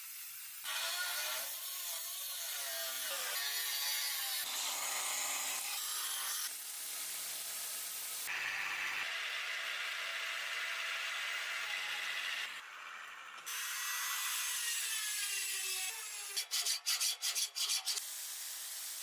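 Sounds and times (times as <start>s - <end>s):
tool grinding against steel: 13.5s - 18.0s.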